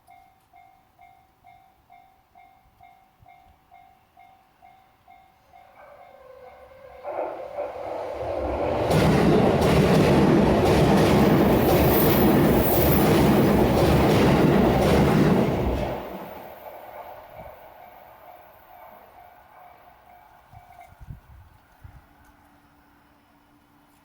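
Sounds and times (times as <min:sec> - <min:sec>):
crossing warning bell: 0:00.0 - 0:07.3, 0:17.5 - 0:21.0
electric train passing: 0:04.0 - 0:23.8.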